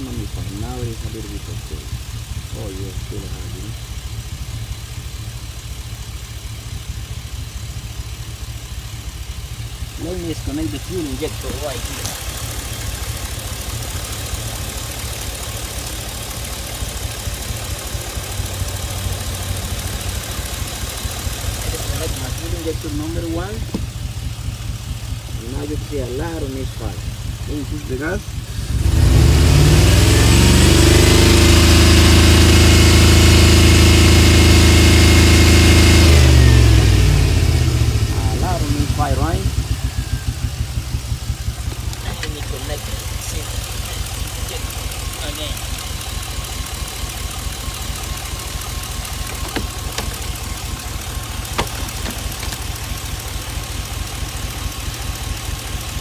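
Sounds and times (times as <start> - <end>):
engine idling with misfire: 0.0 - 56.0.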